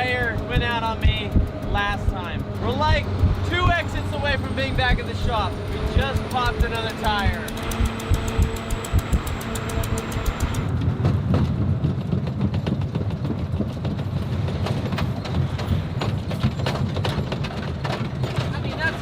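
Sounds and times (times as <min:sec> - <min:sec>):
rapid irregular knocking: 0:00.0 - 0:10.7
truck rumbling: 0:00.0 - 0:19.0.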